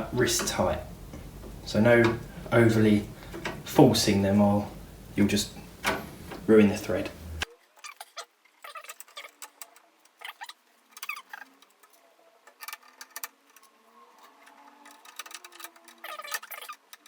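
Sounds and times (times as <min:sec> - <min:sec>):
screwdriver clicking and scraping screws: 0:08.8 - 0:17.0.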